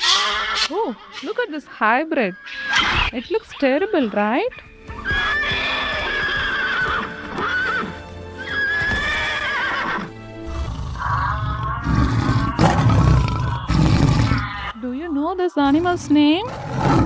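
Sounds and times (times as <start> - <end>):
background music: 1.9 - 13.5
horse whinnying: 2.1 - 14.7.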